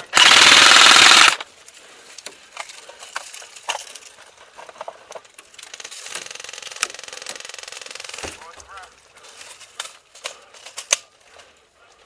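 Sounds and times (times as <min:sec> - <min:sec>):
distant airsoft full-auto fire: 0:00.1 - 0:01.4.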